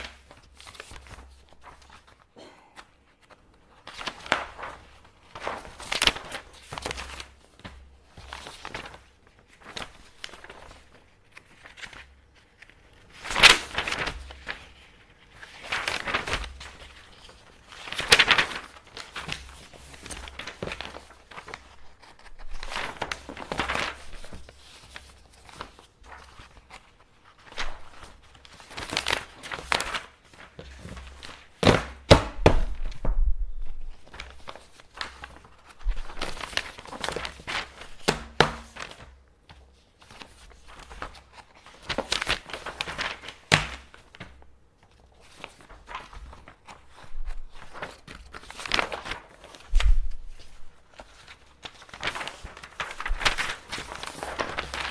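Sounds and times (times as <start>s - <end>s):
paper rustling and folding: 0.0s - 54.9s.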